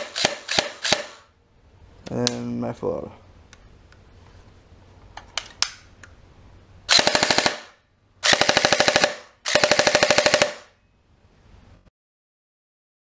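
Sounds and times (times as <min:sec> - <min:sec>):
airsoft rifle automatic bursts: 0:00.0 - 0:01.2, 0:06.9 - 0:10.7.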